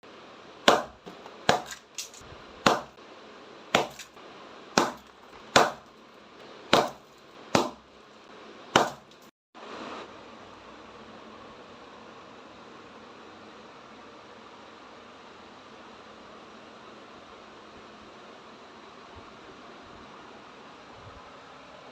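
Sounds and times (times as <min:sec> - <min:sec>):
sharp crisp impacts: 0:00.7 - 0:03.0, 0:03.8 - 0:04.1, 0:04.8 - 0:06.0, 0:06.7 - 0:07.9.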